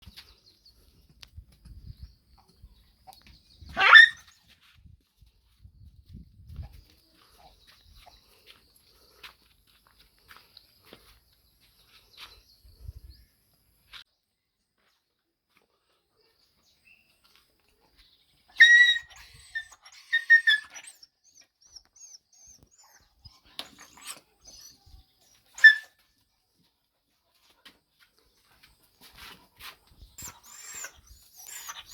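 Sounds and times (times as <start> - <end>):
puppy yelping: 3.7 - 4.4, 18.6 - 24.8, 25.6 - 26.0, 30.2 - 31.9.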